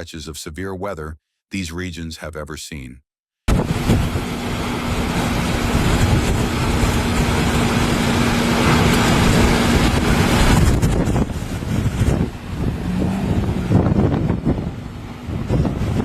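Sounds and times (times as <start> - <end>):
loud rushing noise: 3.5 - 16.0.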